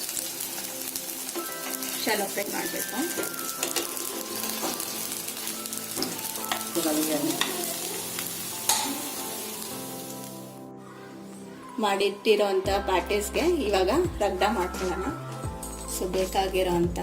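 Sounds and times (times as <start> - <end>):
patties sizzling in a pan: 0.0 - 11.4.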